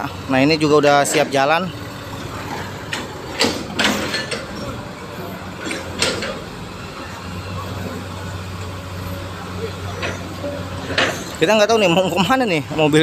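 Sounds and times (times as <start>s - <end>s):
heavy machinery running: 0.0s - 13.0s
mechanical creaking: 0.6s - 11.7s
sharp metallic clanks: 0.8s - 8.1s, 9.9s - 11.5s.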